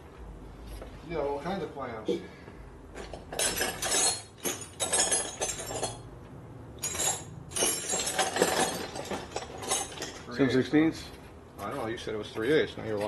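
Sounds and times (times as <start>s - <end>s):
metal tools clinking: 3.0s - 6.1s, 6.8s - 10.6s.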